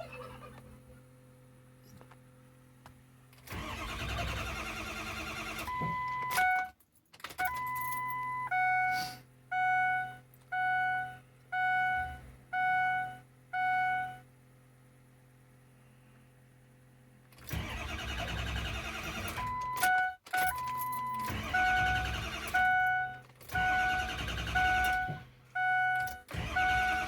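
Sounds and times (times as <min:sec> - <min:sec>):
starter motor cranking engine: 0:03.3 - 0:05.8, 0:17.3 - 0:19.6, 0:21.2 - 0:22.7, 0:23.4 - 0:25.1, 0:26.2 - 0:27.0.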